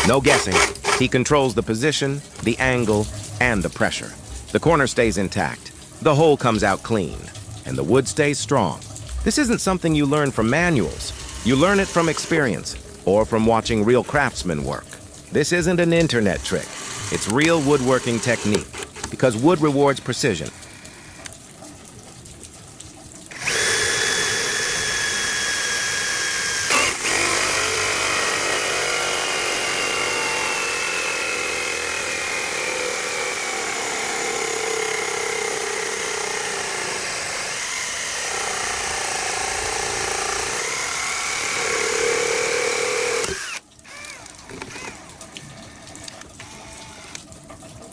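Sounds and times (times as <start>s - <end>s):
drill click: 0.0s - 1.1s, 11.1s - 12.4s, 16.6s - 19.2s, 23.3s - 45.1s, 46.3s - 47.2s
electric drill boring into wood: 0.0s - 1.2s, 10.8s - 12.4s, 16.6s - 19.1s, 23.3s - 47.3s.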